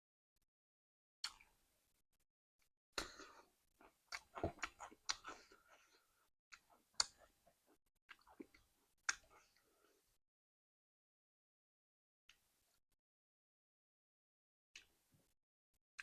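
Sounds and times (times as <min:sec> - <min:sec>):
close-up chewing: 0:03.0 - 0:09.9
sharp mouth clicks: 0:06.6 - 0:07.3.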